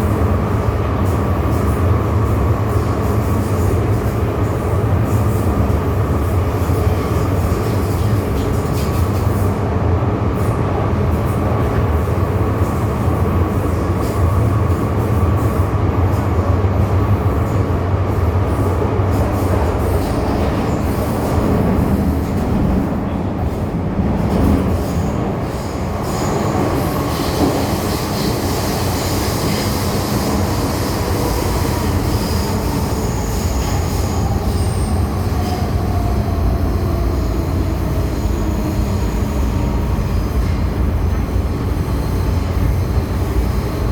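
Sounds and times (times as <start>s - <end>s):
train rumbling: 0.0s - 43.9s.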